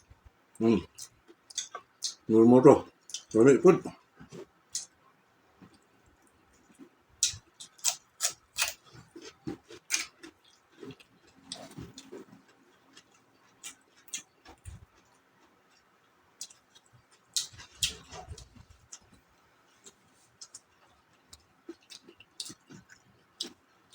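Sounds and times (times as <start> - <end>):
wet chewing mouth sounds: 6.6 - 19.2, 19.8 - 23.9.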